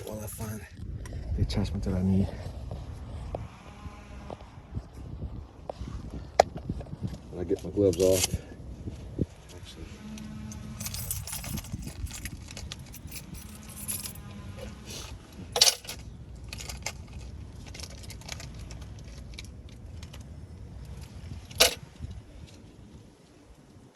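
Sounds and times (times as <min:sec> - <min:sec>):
metal hand tools rattling: 0:10.8 - 0:14.2.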